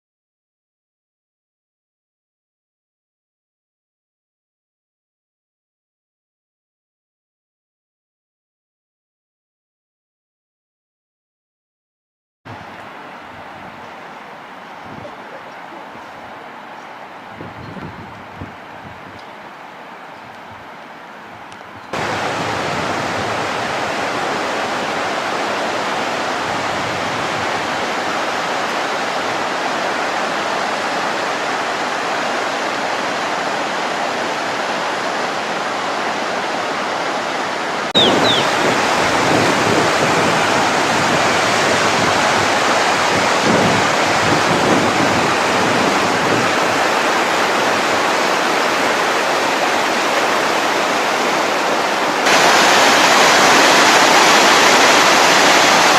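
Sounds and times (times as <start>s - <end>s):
floodwater rushing: 12.5s - 55.9s.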